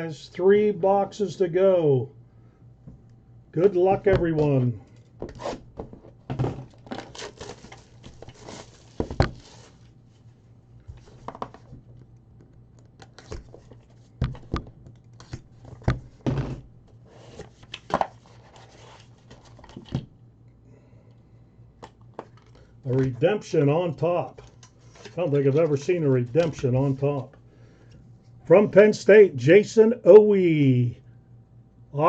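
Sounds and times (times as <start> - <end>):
plastic wrap crinkling and tearing: 6.7 - 9.9
cards being handled: 12.8 - 15.9.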